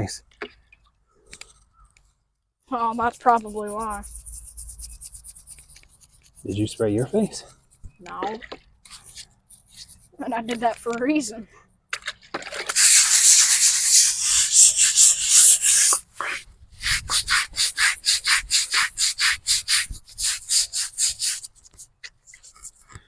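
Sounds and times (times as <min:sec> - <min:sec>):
stiff brush scrubbing stone: 0:02.7 - 0:06.8, 0:08.2 - 0:10.7, 0:12.5 - 0:23.0.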